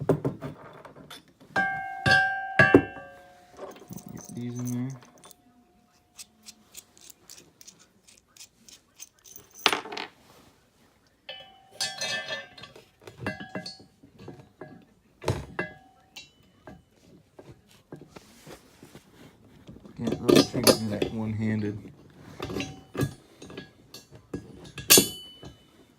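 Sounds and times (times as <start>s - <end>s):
metal hardware clinking: 1.1s - 10.1s, 11.3s - 14.7s, 20.0s - 21.7s, 22.4s - 25.7s
ringing metal clatter: 1.6s - 5.5s, 11.3s - 14.0s, 22.4s - 25.8s.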